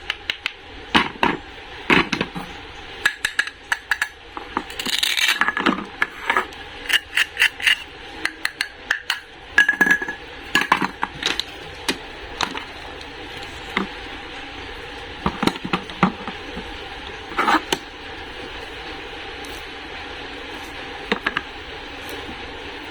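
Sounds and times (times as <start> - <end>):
steady background hiss: 0.0 - 22.9
hard objects clicking and clinking: 1.0 - 14.0.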